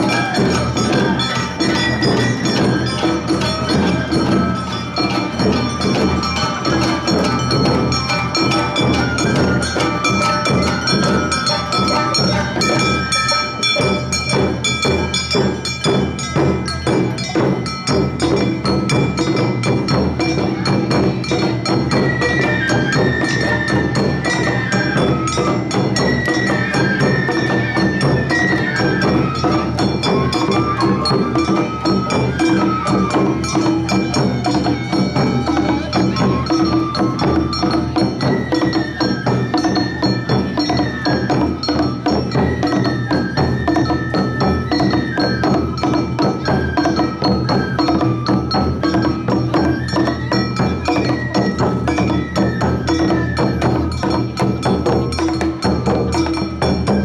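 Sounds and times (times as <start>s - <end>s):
drums: 0.0s - 57.0s
high bamboo flute melody: 0.0s - 57.0s.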